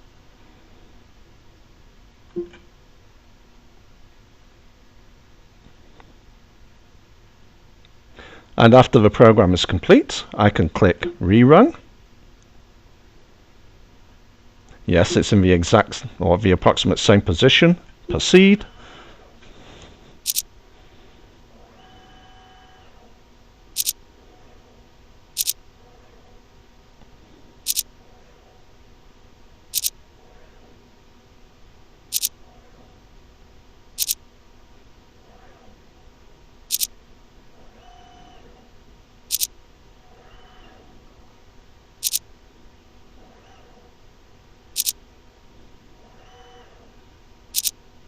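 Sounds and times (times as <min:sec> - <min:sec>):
faint motor whirs: 0:00.0 - 0:48.0
sharp clicks: 0:23.8 - 0:24.0.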